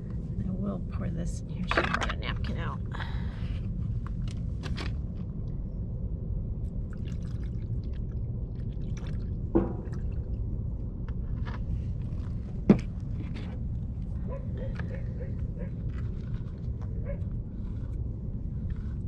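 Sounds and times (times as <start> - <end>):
low rumble: 0.0 - 19.0
liquid pouring: 6.8 - 10.5
small clicks and drips: 6.8 - 12.3.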